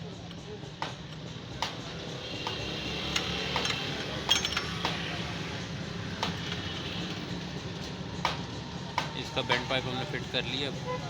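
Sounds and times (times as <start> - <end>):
metal clinks and taps: 2.4 - 5.0.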